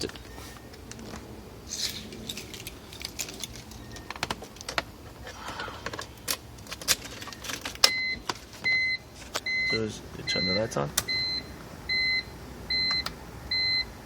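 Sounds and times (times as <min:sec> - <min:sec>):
car keys jangling: 0:01.7 - 0:05.0, 0:06.0 - 0:08.0
car warning chime: 0:07.9 - 0:13.9.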